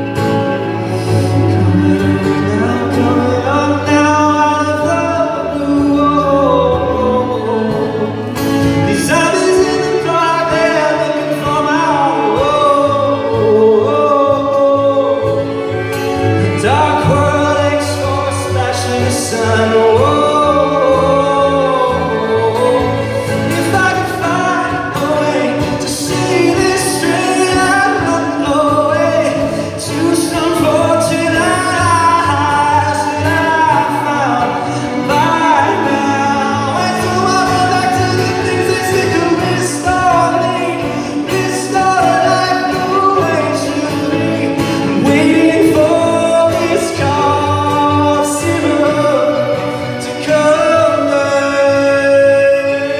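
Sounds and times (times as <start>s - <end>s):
instrumental accompaniment: 0.0s - 52.9s
man singing: 0.0s - 52.9s.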